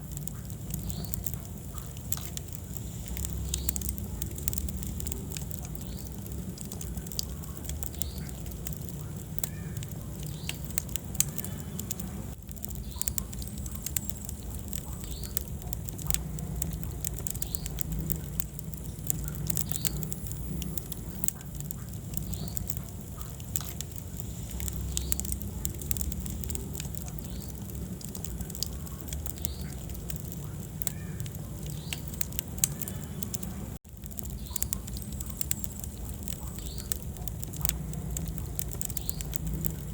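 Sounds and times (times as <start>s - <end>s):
low rumble of flames: 0.0s - 39.9s
wood fire crackling and popping: 0.0s - 39.9s.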